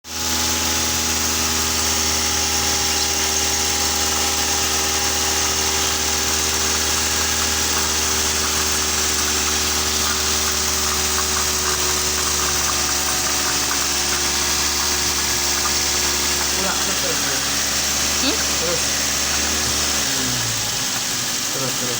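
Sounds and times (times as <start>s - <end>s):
car engine idling: 5.9s - 21.9s.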